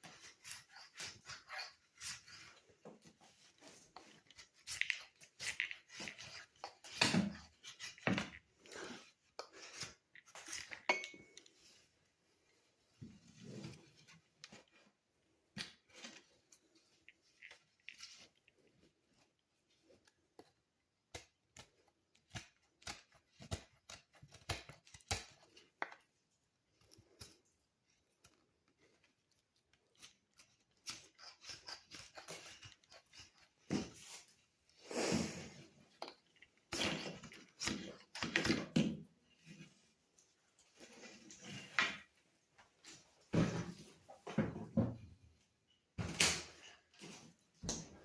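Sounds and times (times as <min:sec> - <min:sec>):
knife cutting: 0:00.0 - 0:02.6, 0:21.1 - 0:25.6, 0:29.9 - 0:35.6.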